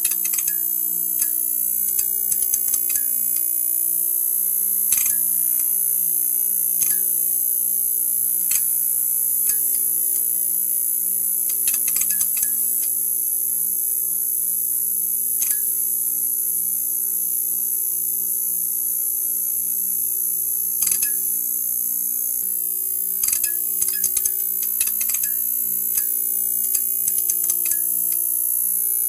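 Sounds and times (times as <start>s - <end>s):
neon sign buzzing: 17.8s - 29.0s
sharp crackling clicks: 23.2s - 28.3s.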